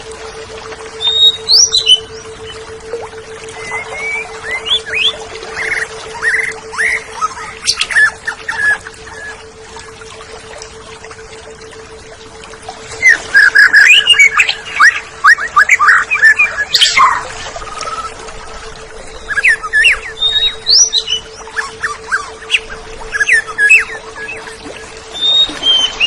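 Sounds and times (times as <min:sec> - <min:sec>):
steady low hum: 0:00.0 - 0:26.0
bird singing whistles and chatter: 0:01.0 - 0:02.3, 0:13.0 - 0:18.1, 0:19.2 - 0:24.5, 0:25.2 - 0:26.0.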